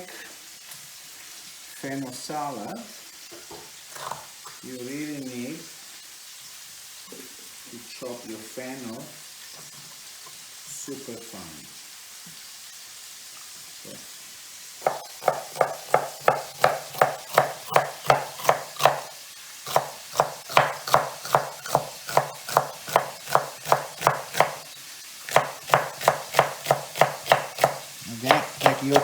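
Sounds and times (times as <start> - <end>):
frying pan sizzling: 0.0 - 29.0
knife chopping on cutting board: 14.8 - 24.6, 25.3 - 29.0.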